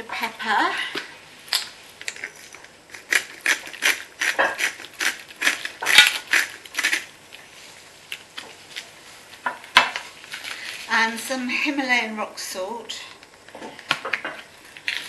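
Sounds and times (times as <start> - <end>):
pepper mill grinding: 2.0 - 7.2.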